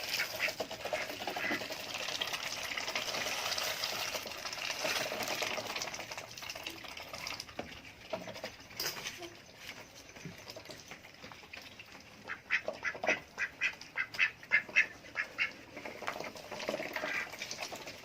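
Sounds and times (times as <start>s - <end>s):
ducks dabbling in water: 0.0s - 18.0s.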